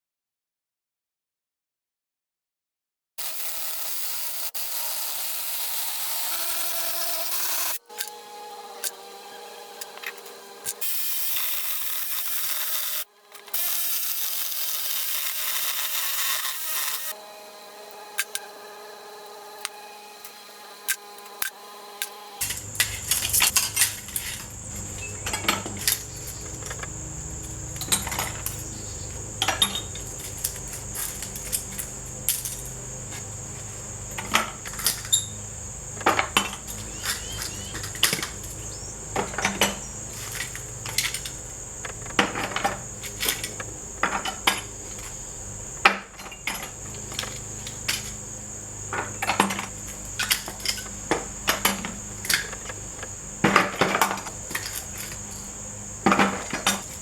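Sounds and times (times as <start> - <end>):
steady high-pitched whine: 3.3 - 57.0
metal parts clinking: 6.5 - 8.2, 18.2 - 18.5, 20.9 - 48.3, 48.9 - 57.0.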